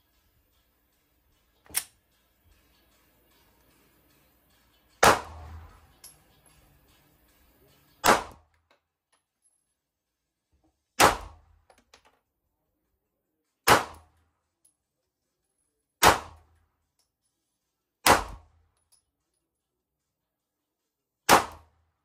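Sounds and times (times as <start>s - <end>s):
pistol shots: 5.0s - 5.5s, 8.0s - 8.4s, 11.0s - 11.4s, 13.6s - 14.1s, 16.0s - 16.5s, 18.0s - 18.5s, 21.3s - 21.7s.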